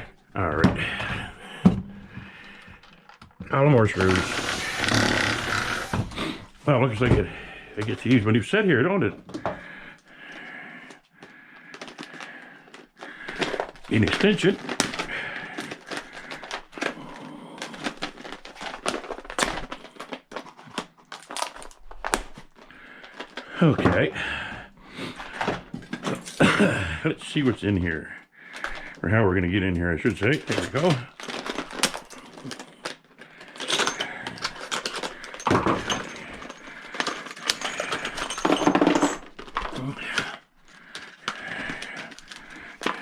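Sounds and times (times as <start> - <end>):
tools and parts clinking: 2.5 - 6.2, 25.3 - 26.9, 30.2 - 43.0.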